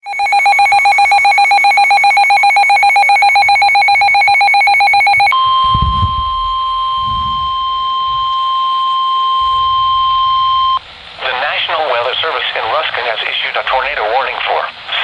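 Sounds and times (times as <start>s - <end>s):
steady warning alarm tone: 0.0s - 10.8s
low rumble: 5.4s - 8.4s, 9.4s - 11.3s
pulsing electronic alert tone: 9.3s - 10.8s.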